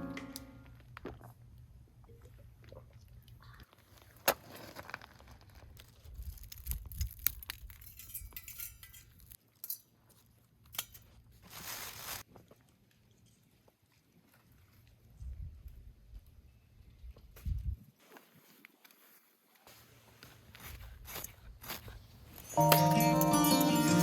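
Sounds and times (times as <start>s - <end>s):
small hard objects clinking: 6.2s - 9.4s
rustling: 11.4s - 12.2s.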